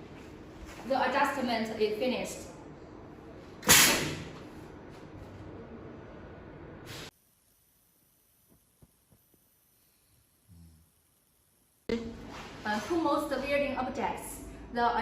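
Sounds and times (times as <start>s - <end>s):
workshop room hiss: 2.8s - 4.7s, 6.1s - 13.9s.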